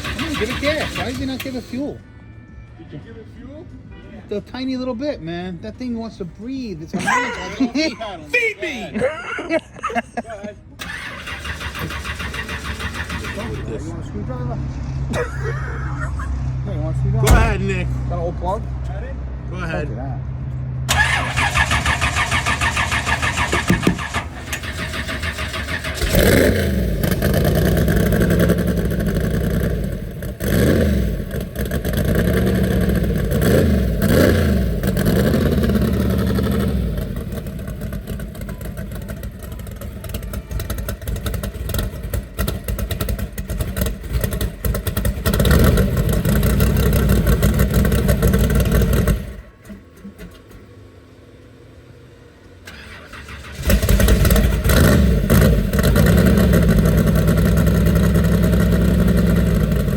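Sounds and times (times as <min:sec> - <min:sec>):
drag car engine revving: 0:00.0 - 0:01.8, 0:10.8 - 0:14.2, 0:20.9 - 0:50.9, 0:52.6 - 0:59.9.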